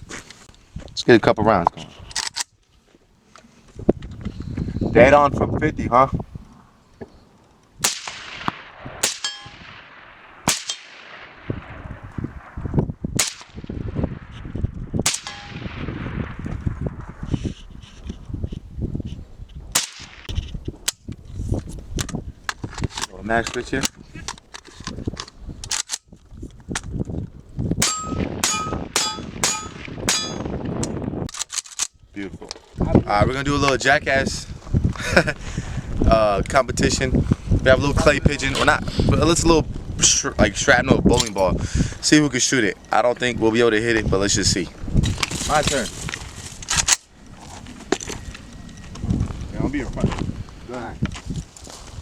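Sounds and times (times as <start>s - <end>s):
wind buffeting microphone: 3.6s - 52.0s
rifle shots: 7.8s - 16.8s, 19.7s - 20.3s, 27.8s - 30.6s
steel target plates ringing: 9.0s - 9.6s, 27.8s - 30.5s.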